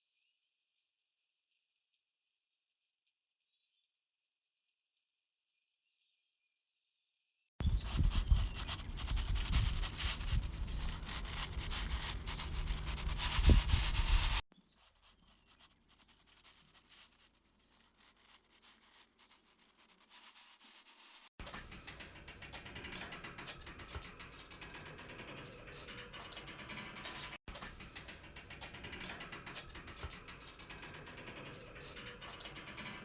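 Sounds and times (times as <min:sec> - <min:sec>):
scratchy crackle and rubbing: 0:07.6 - 0:27.4.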